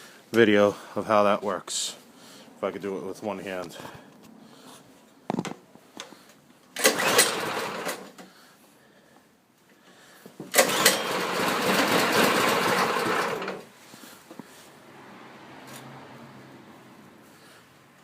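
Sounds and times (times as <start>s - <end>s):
engine cranking without starting: 6.8s - 8.3s, 10.5s - 13.8s.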